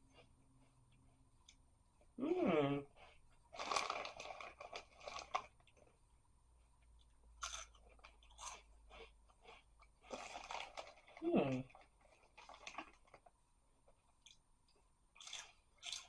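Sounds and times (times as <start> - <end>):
crunchy snack being chewed: 3.0 - 5.9, 6.9 - 13.3, 15.1 - 16.0.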